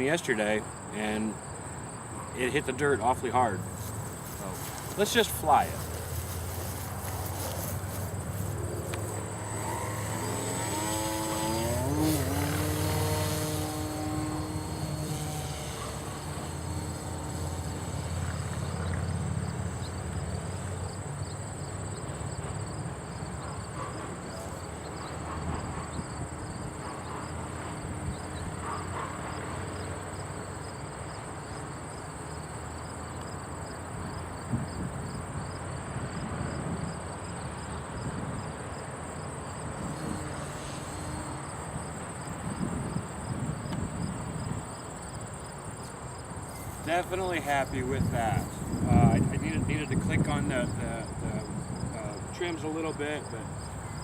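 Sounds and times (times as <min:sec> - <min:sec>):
crickets chirping: 0:00.0 - 0:54.0
model plane motor whining: 0:03.8 - 0:20.7, 0:39.8 - 0:41.8.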